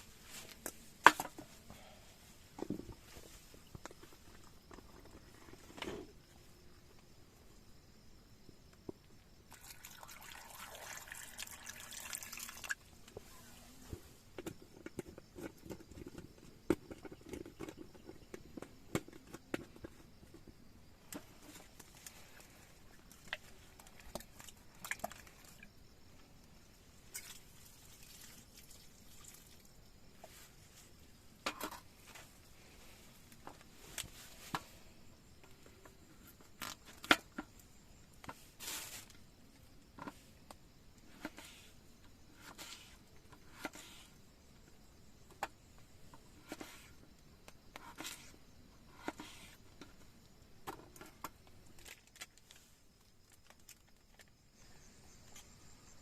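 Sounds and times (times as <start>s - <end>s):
raindrops dripping: 9.5s - 12.8s
faint hiss: 37.5s - 44.6s.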